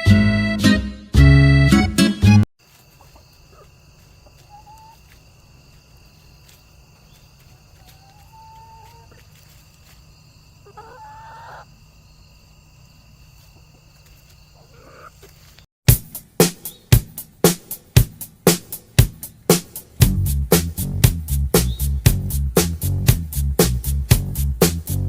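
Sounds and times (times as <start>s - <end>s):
chickens calling: 2.6s - 15.6s.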